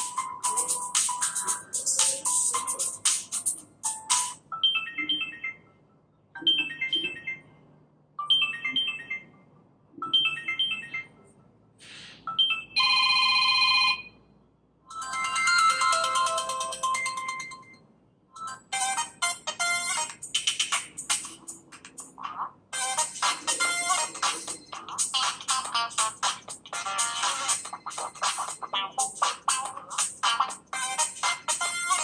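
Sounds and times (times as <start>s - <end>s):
ringtone chiming phrases: 0.0s - 5.7s, 8.2s - 9.3s, 14.9s - 17.8s, 18.4s - 20.2s, 22.8s - 32.0s
ringtone melody: 0.0s - 5.8s, 6.4s - 7.5s, 8.2s - 9.3s, 10.0s - 11.2s, 14.9s - 17.8s, 18.4s - 22.1s, 22.7s - 32.0s.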